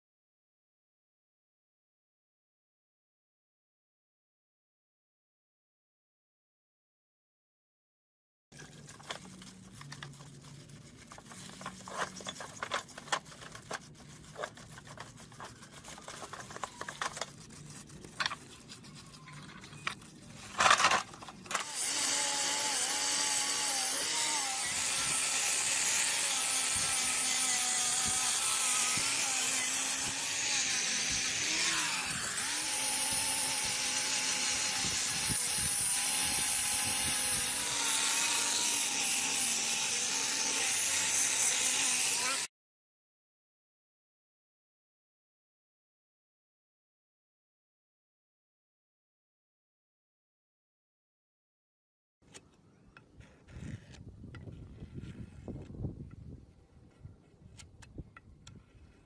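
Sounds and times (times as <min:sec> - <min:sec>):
electric power tool running: 0:21.5 - 0:42.5.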